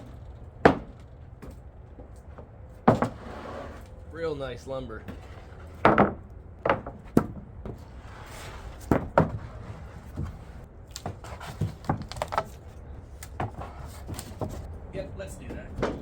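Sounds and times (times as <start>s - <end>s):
wooden boards knocking: 0.0s - 1.6s, 5.7s - 7.8s, 8.8s - 10.4s, 15.5s - 16.0s.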